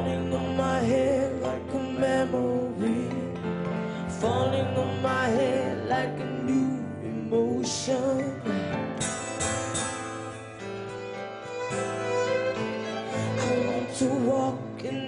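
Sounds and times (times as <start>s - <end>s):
sliding melodic line: 9.1s - 15.0s.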